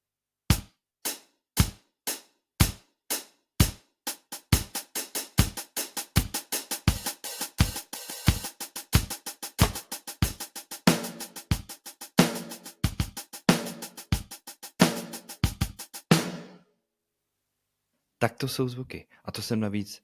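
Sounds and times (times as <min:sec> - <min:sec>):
electronic drum beat: 0:03.6 - 0:16.6.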